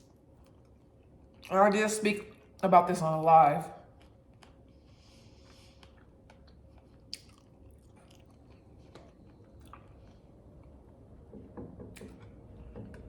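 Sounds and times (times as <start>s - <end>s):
person chewing food: 0.0s - 1.5s, 3.8s - 11.2s
small mouth clicks: 5.8s - 8.4s.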